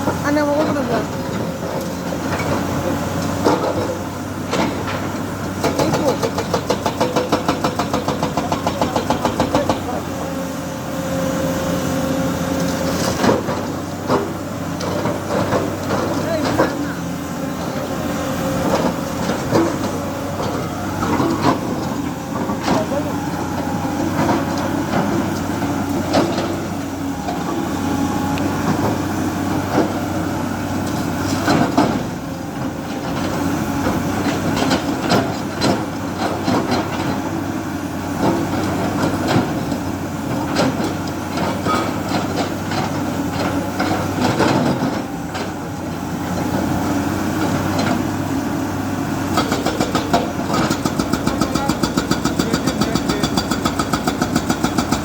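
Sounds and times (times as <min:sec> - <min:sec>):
diesel engine running: 0:00.0 - 0:55.0
metal clanks and knocks: 0:49.3 - 0:55.0.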